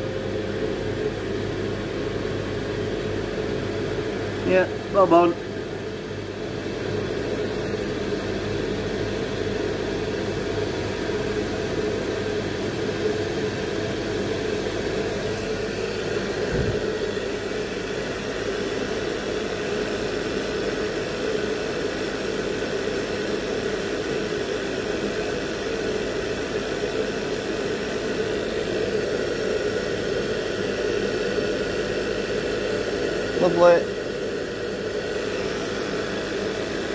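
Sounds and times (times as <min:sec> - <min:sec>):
constant hum: 0:14.4 - 0:19.3
burner flame rushing: 0:15.4 - 0:17.8.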